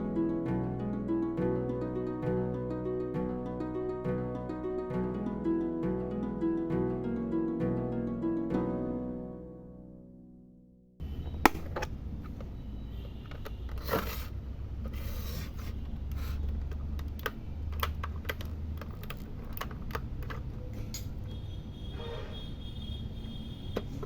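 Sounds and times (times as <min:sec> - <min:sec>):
plastic scrapes: 0:13.8 - 0:16.5
sharp plastic clicks: 0:16.5 - 0:21.1.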